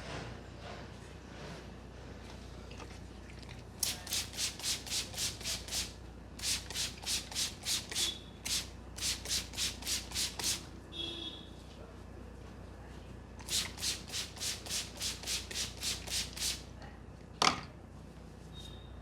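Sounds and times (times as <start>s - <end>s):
hands rubbing hair: 3.8s - 10.6s.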